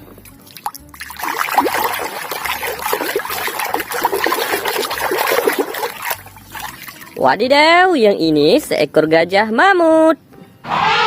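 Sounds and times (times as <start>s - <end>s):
water trickling and splashing: 0.0s - 7.5s.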